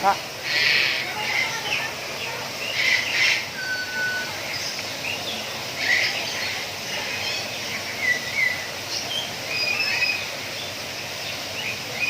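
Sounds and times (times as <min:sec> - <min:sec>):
birds chirping: 0:00.0 - 0:12.0
distant chatter: 0:00.0 - 0:12.0
whistled bird note: 0:03.2 - 0:04.6.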